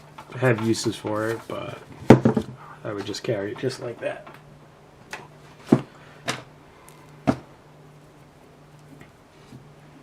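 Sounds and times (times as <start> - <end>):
faint steady hum: 0.0 - 10.0
objects knocking on hard surface: 2.0 - 2.6.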